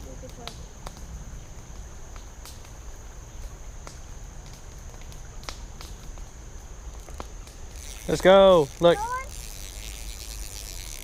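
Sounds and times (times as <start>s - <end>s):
light clicks and rustles: 3.4s - 11.0s
high-pitched insect drone: 5.9s - 11.0s.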